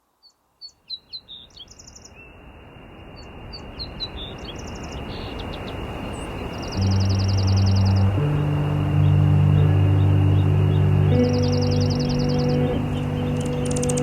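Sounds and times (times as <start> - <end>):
outdoor ambience hiss: 0.0 - 14.0
small birds chirping: 0.2 - 2.4, 3.2 - 14.0
bird rattling trill: 13.4 - 14.0.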